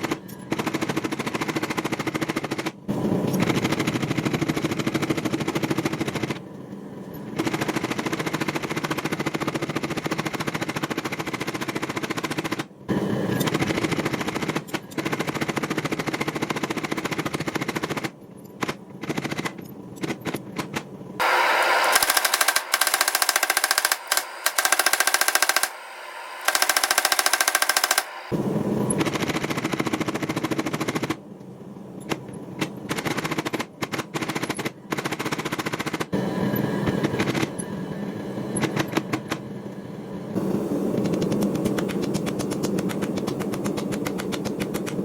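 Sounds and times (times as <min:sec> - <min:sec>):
rapid hammer blows on steel: 0:21.2 - 0:28.4.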